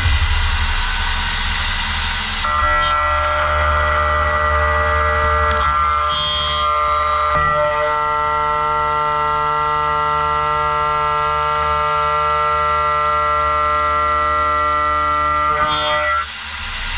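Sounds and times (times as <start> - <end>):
low rumble: 0.0 - 2.5
machine cutting whine: 0.0 - 11.7, 13.4 - 16.9.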